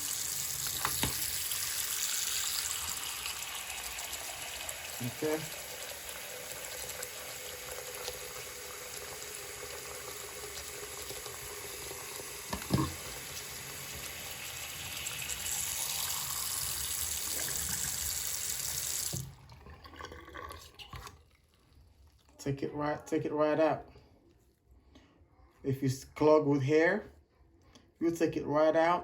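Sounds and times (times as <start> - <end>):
faucet running into a sink: 0.0 - 21.2.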